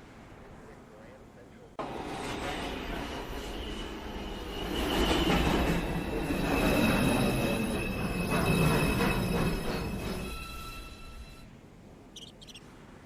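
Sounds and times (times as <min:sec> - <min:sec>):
train rumbling: 0:00.7 - 0:11.5
subway train wheels squealing: 0:01.8 - 0:11.5.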